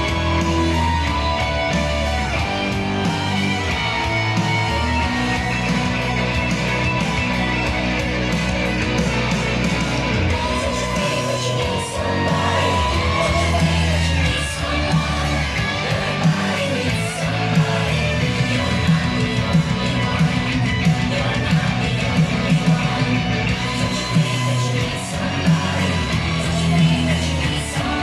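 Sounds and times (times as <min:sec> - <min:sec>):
rock music over speakers: 0:00.0 - 0:28.0.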